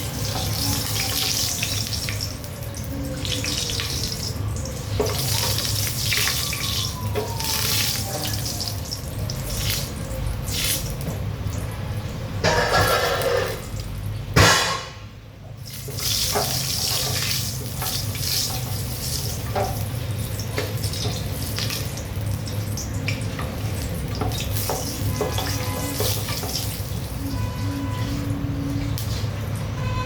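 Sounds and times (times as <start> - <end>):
sharp knock: 14.4 - 15.1.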